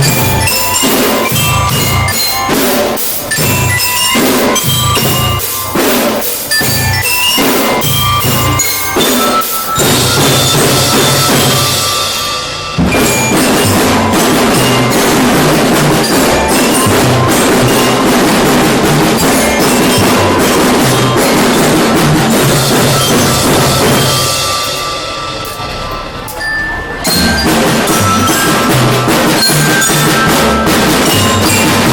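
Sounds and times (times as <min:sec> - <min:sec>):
bass drums beating: 0:00.0 - 0:02.5, 0:27.1 - 0:31.9
snare drums: 0:00.0 - 0:25.7, 0:27.0 - 0:31.9
bell-like melody notes: 0:00.0 - 0:31.9.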